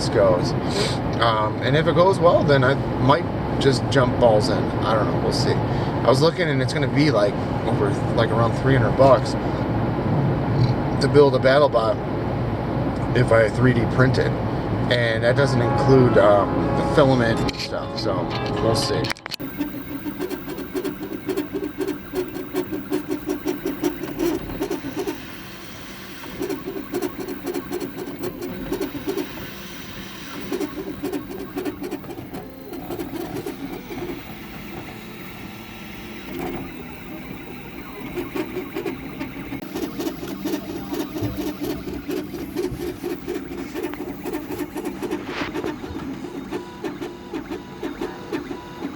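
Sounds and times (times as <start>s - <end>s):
stepper motors buzzing: 19.4s - 48.9s.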